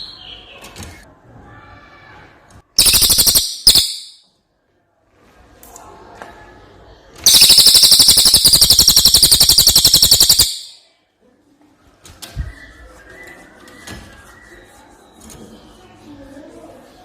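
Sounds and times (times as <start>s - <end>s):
songbird fast high trill: 2.8s - 4.2s, 7.3s - 10.8s.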